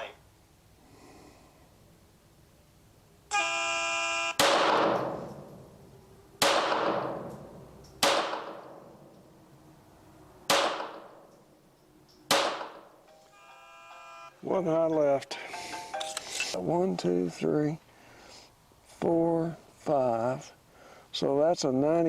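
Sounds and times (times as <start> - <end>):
electronic start horn: 3.3 - 4.4, 13.2 - 14.4
pistol shots echoing: 4.4 - 5.7, 6.4 - 9.0, 10.5 - 11.3, 12.3 - 13.0.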